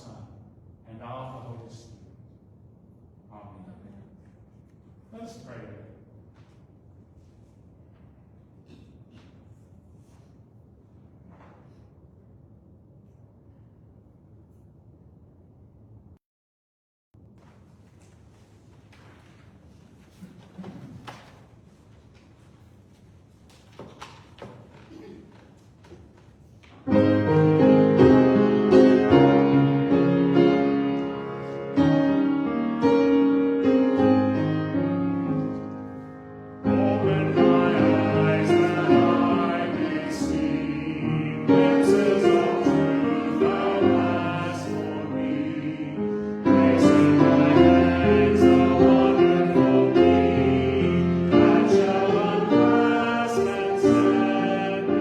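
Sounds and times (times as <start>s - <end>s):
piano accompaniment: 26.8s - 55.0s
voices singing: 36.6s - 55.0s.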